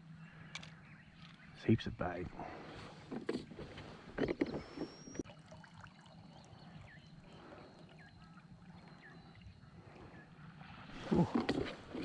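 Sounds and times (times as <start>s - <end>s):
water lapping: 3.8s - 12.0s.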